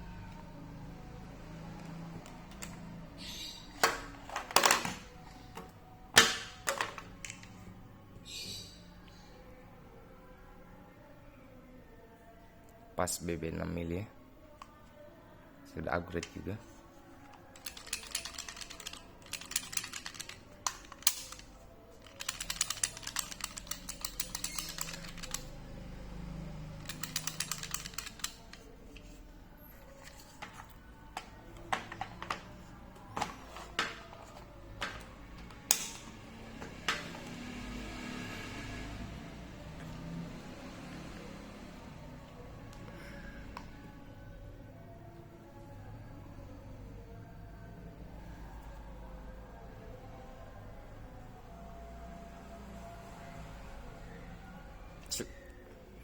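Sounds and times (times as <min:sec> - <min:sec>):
toy pistol slide clicks and clacks: 0:17.3 - 0:25.7, 0:26.8 - 0:28.7.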